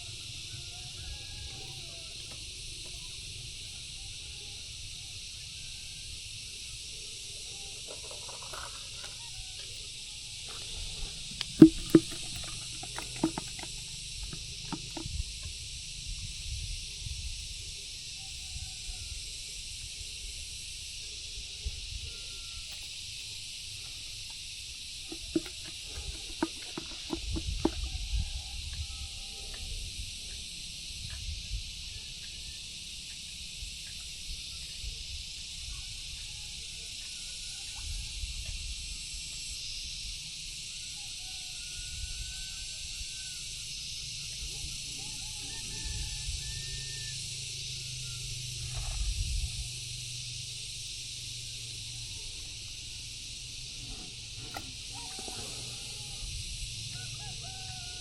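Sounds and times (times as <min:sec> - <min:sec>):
high-pitched insect chorus: 0:00.0 - 0:58.0
knocks: 0:11.4 - 0:15.2.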